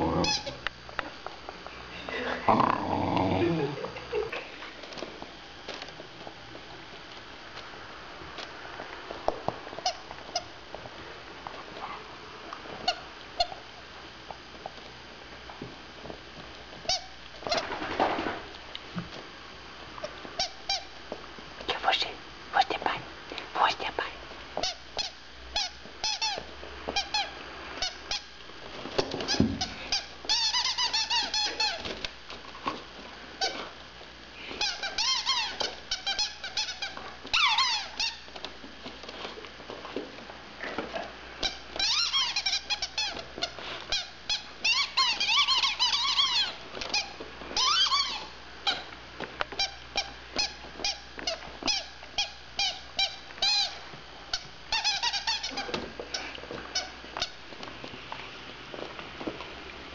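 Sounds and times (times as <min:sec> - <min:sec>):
squeaky rubber toy squeaking: 0:41.8 - 0:43.1, 0:44.4 - 0:46.6, 0:54.7 - 0:55.7.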